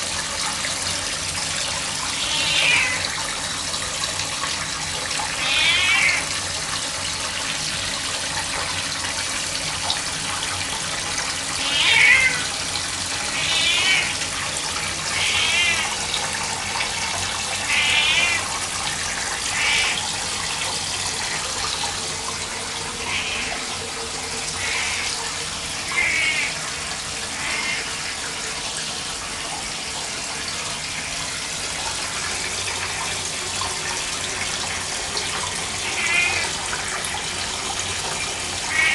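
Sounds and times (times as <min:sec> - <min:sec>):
tap water running: 0:00.0 - 0:38.9
cat meowing: 0:02.2 - 0:03.0, 0:05.4 - 0:06.2, 0:11.6 - 0:12.5, 0:13.4 - 0:14.1, 0:15.1 - 0:15.9, 0:17.7 - 0:18.4.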